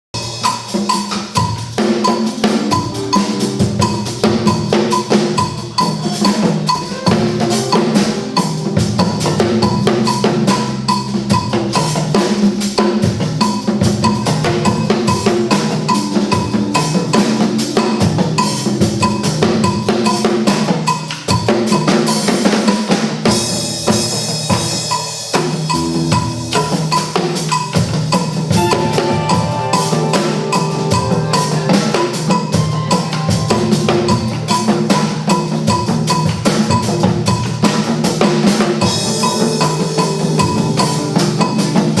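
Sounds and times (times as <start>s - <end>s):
drum kit beat: 0.2s - 42.0s
pitched percussion: 0.2s - 42.0s
repeating bass line: 28.6s - 34.9s.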